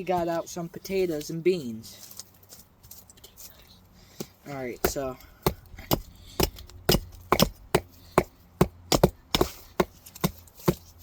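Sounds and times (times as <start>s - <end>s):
axes chopping logs: 4.2s - 11.0s.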